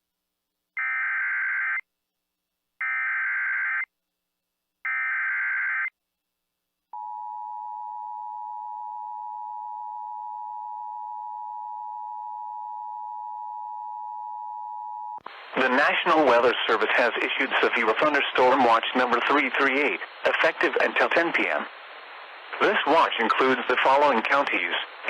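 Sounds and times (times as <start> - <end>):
steady attention tone: 7.0 - 15.9.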